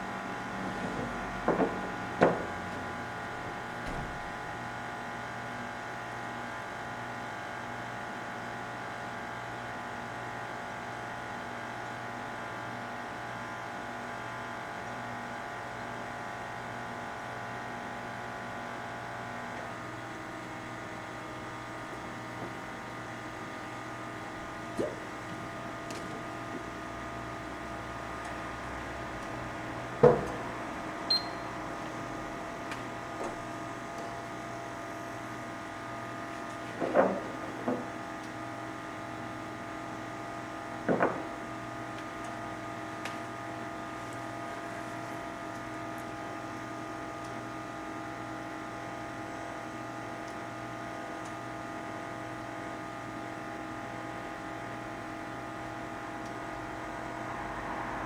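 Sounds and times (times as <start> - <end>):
machine hum with held tones: 30.7 - 36.3.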